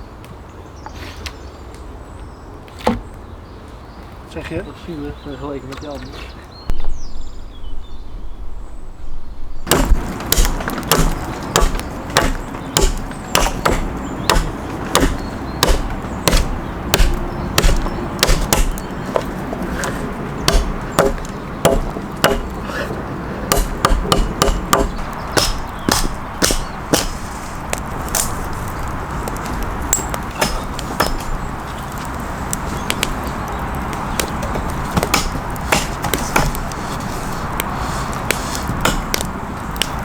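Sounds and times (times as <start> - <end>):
sharp strikes on wood: 2.8 - 3.0, 9.7 - 22.5, 23.5 - 28.3, 30.0 - 31.3, 34.2 - 36.7, 38.3 - 40.0.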